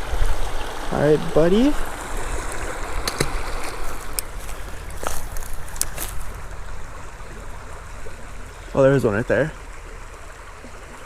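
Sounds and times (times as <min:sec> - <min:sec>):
small stream running: 0:00.0 - 0:11.0.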